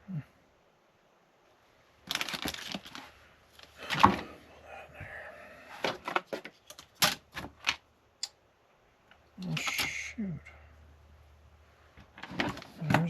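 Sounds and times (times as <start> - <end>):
plastic and metal clattering: 2.1 - 4.4, 5.8 - 7.8, 12.0 - 13.0.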